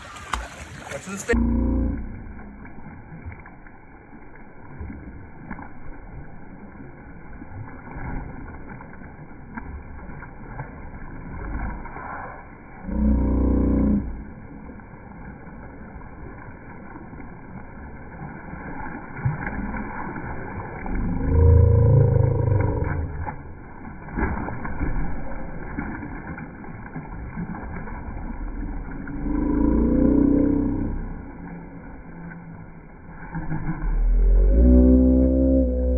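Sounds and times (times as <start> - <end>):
muffled water sloshing: 0.0 - 35.9
low droning swell: 1.3 - 5.3, 11.0 - 18.2, 19.2 - 23.9, 27.3 - 35.9.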